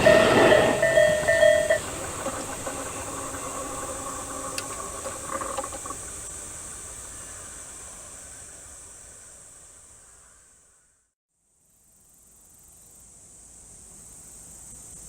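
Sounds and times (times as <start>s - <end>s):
crossing warning bell beeping: 0.0s - 5.8s
train hiss and rumble: 0.0s - 11.1s, 12.3s - 15.0s.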